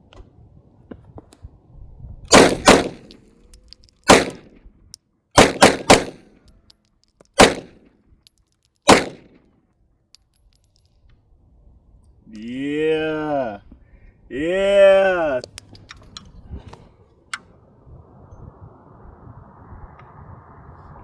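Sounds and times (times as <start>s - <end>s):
pistol gunshots: 2.3s - 3.2s, 4.1s - 4.5s, 5.4s - 6.3s, 7.4s - 7.8s, 8.9s - 9.3s.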